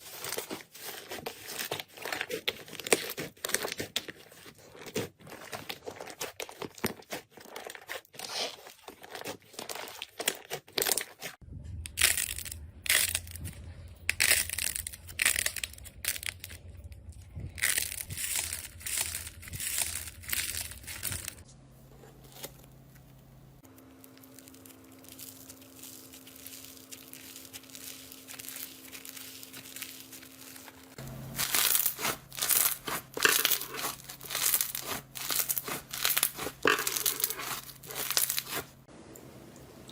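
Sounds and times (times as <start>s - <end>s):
slime crackling and squelching: 0.0s - 38.9s
low hum: 11.4s - 39.9s.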